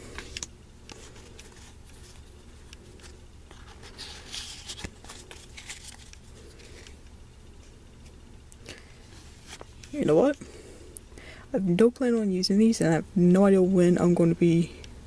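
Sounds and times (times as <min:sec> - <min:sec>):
cards being handled: 0:00.0 - 0:10.0
foil wrapper crinkling: 0:02.9 - 0:07.0.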